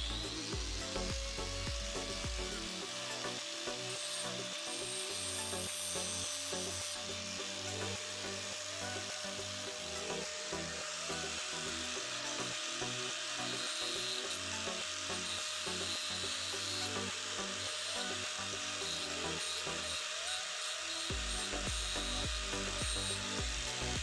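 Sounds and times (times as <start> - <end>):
soft background music: 0.0 - 24.0.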